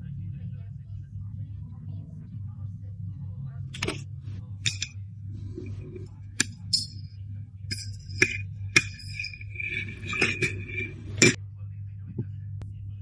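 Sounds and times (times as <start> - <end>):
steady low hum: 0.0 - 13.0
light clinks and taps: 4.6 - 5.0, 5.6 - 11.4
held ringing tone: 4.6 - 11.4.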